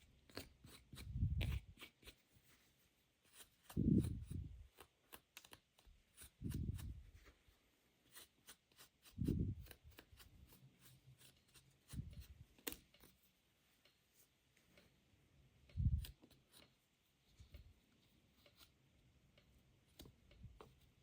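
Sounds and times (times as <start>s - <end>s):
small clicks and crinkles: 4.6s - 6.0s, 11.9s - 15.0s.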